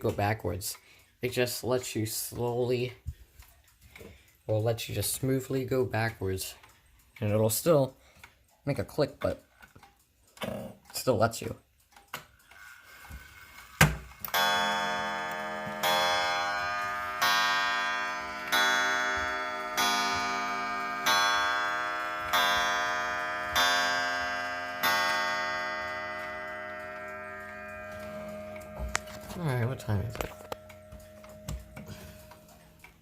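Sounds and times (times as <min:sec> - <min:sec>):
clock mechanism click: 0:02.1 - 0:33.0
wall clock striking: 0:13.8 - 0:33.0.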